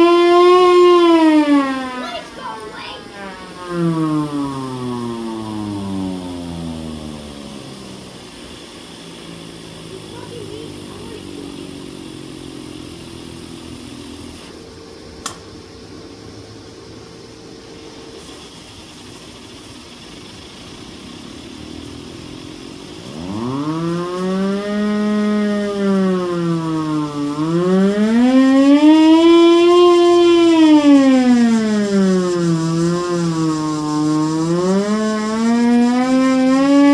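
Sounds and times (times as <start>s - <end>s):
hand-crank siren wailing: 0.0s - 14.6s, 21.2s - 36.9s
steady mechanical hum: 0.0s - 36.9s
single click: 15.2s - 15.5s.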